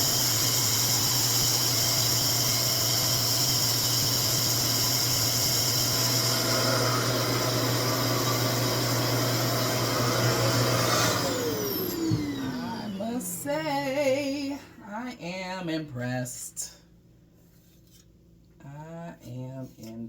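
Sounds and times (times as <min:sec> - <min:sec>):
motor winding down whine: 0:00.0 - 0:13.0
hair dryer running: 0:00.0 - 0:13.4.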